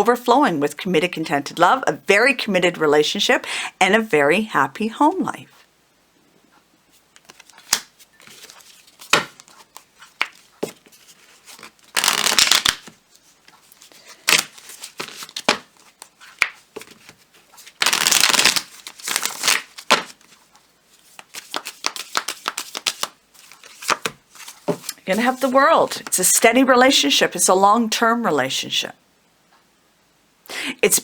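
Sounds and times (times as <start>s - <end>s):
cards being shuffled: 7.2s - 26.2s.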